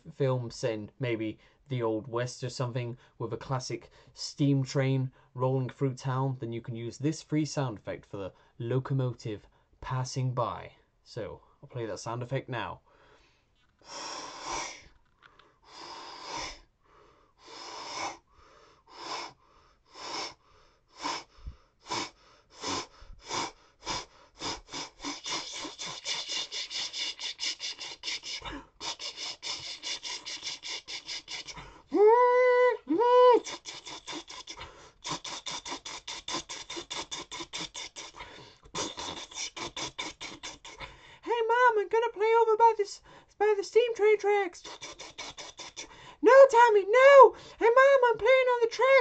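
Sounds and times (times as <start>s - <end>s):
person imitating train chugging: 21.9s - 41.8s, 43.6s - 49.0s.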